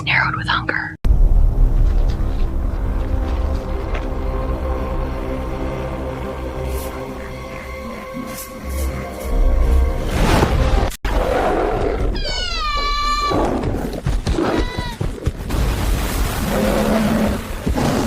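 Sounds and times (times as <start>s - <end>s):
animal crying: 12.2s - 13.5s.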